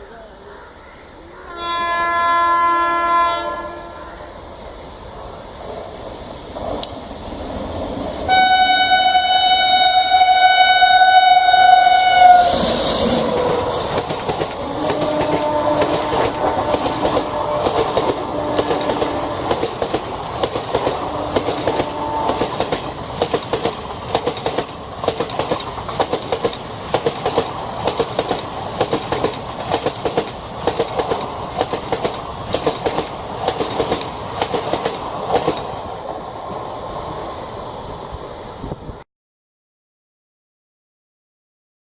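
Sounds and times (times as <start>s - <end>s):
train horn blast: 1.5s - 4.3s, 8.3s - 13.8s, 14.6s - 19.5s, 21.0s - 22.6s
train wheels clattering over rail joints: 13.2s - 35.7s.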